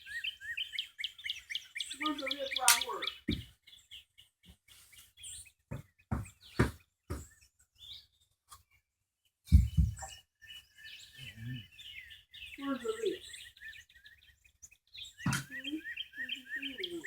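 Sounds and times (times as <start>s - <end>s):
birds chirping: 0.0s - 8.8s, 9.4s - 17.0s
sharp knocks: 5.7s - 7.2s, 15.3s - 15.5s.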